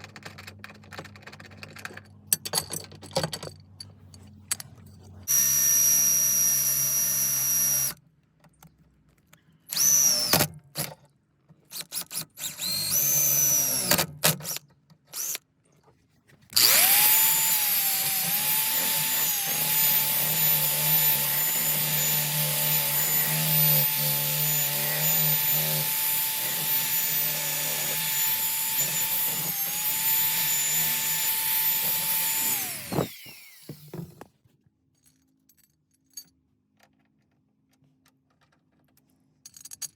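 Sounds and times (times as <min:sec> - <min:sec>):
power drill drilling sheet metal: 0:05.3 - 0:08.0, 0:09.7 - 0:10.5, 0:11.7 - 0:15.4, 0:16.6 - 0:34.2.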